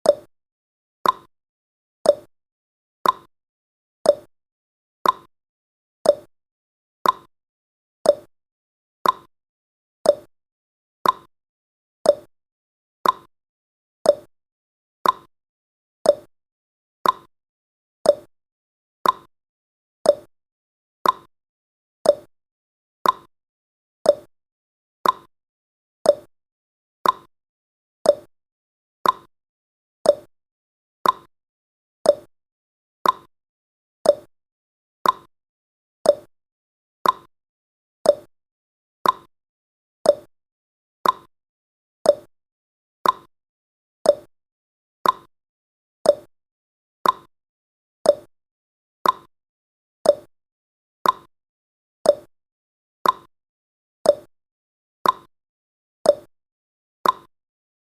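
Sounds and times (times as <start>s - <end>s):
timer ticking: 0.0s - 0.3s, 1.0s - 1.3s, 2.1s - 2.3s, 3.0s - 3.3s, 4.1s - 4.3s, 5.0s - 5.3s, 6.1s - 6.3s, 7.0s - 7.3s, 8.1s - 8.3s, 9.0s - 9.3s, 10.1s - 10.3s, 11.0s - 11.3s, 12.1s - 12.3s, 13.0s - 13.3s, 14.1s - 14.3s, 15.0s - 15.3s, 16.1s - 16.3s, 17.0s - 17.3s, 18.1s - 18.3s, 19.0s - 19.3s, 20.1s - 20.3s, 21.0s - 21.3s, 22.0s - 22.3s, 23.0s - 23.3s, 24.1s - 24.3s, 25.0s - 25.3s, 26.1s - 26.3s, 27.0s - 27.3s, 28.0s - 28.3s, 29.0s - 29.3s, 30.0s - 30.3s, 31.0s - 31.3s, 32.1s - 32.3s, 33.0s - 33.3s, 34.0s - 34.3s, 35.0s - 35.3s, 36.0s - 36.3s, 37.0s - 37.3s, 38.0s - 38.3s, 39.0s - 39.3s, 40.1s - 40.3s, 41.0s - 41.3s, 42.1s - 42.3s, 43.0s - 43.3s, 44.1s - 44.3s, 45.0s - 45.3s, 46.1s - 46.3s, 47.0s - 47.3s, 48.1s - 48.3s, 49.0s - 49.3s, 50.1s - 50.3s, 51.0s - 51.3s, 52.1s - 52.3s, 53.0s - 53.3s, 54.1s - 54.3s, 55.0s - 55.3s, 56.1s - 56.3s, 57.0s - 57.3s.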